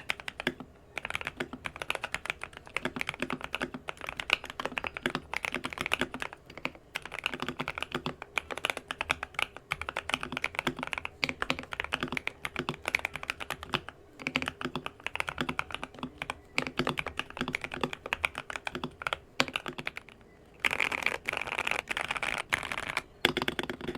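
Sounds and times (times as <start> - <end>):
mechanical keyboard typing: 0.0 - 23.9.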